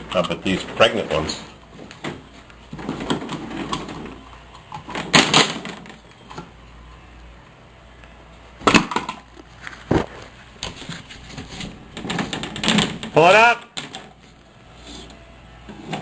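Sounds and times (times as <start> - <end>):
electrical parts clattering: 0.0 - 6.4, 8.6 - 14.4.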